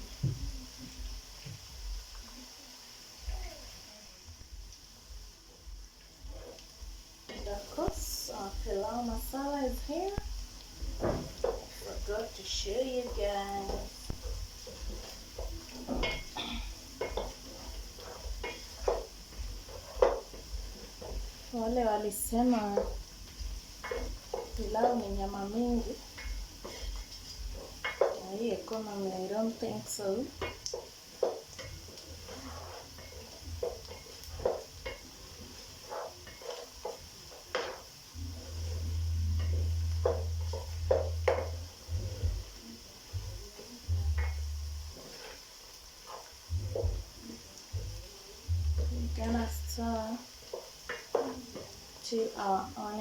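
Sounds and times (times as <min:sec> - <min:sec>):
faint sizzle: 0:00.0 - 0:53.0
wooden spoon stirring in a pot: 0:00.0 - 0:53.0
steady low hum: 0:04.2 - 0:27.7, 0:38.2 - 0:45.0, 0:46.5 - 0:47.2
spoon knocking and scraping pot: 0:11.1 - 0:21.3, 0:22.5 - 0:28.2, 0:30.3 - 0:37.8, 0:39.4 - 0:42.3, 0:50.5 - 0:51.8
spoon scraping a pot: 0:26.2 - 0:28.2, 0:31.2 - 0:37.8.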